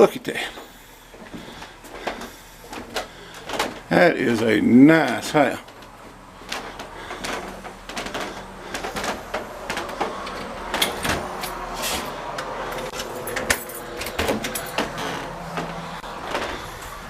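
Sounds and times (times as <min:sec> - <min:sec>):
irregular knocks and clicks: 0:05.1 - 0:11.5.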